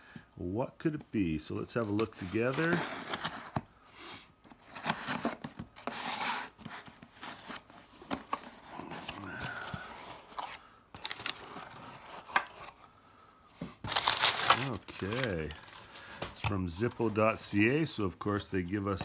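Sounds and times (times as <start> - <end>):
clicks and scrapes of handling: 4.4 - 12.9.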